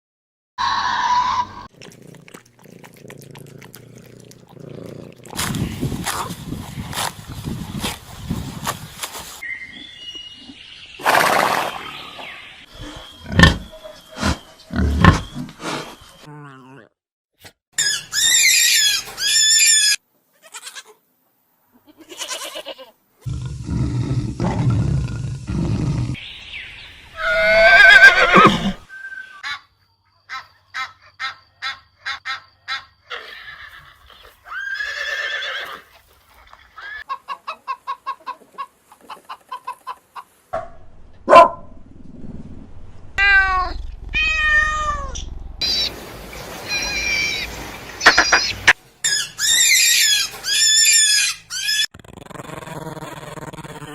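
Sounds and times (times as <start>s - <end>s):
farm animal calls: 27.1s - 29.7s, 30.3s - 40.3s, 46.7s - 51.9s.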